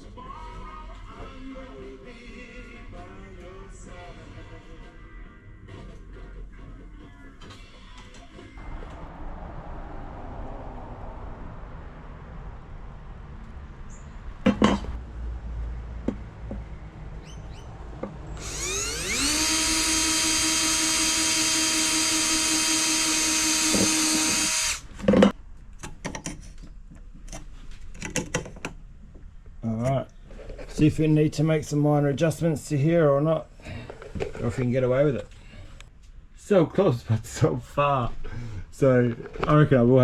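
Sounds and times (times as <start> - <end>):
power drill whining: 18.3 - 25.0.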